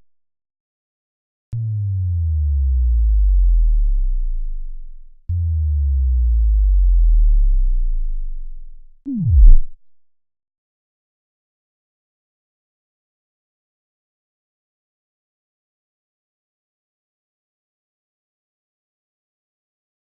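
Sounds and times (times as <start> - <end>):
deep bass tones sliding down: 1.6 - 9.8
fast downward-sweeping drop: 9.1 - 9.8.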